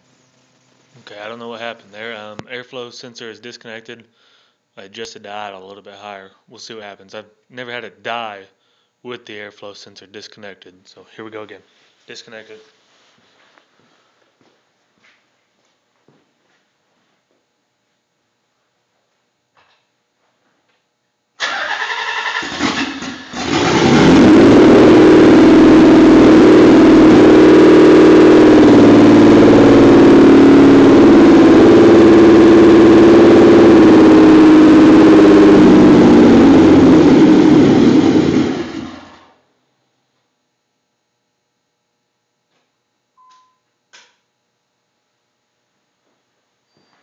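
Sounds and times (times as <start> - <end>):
engine starter cranking: 21.4 - 24.1
engine rough idle: 22.4 - 39.3.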